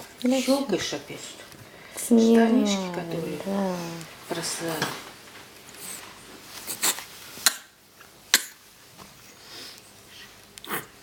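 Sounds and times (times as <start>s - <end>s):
snuffly sniffs: 9.4s - 11.0s.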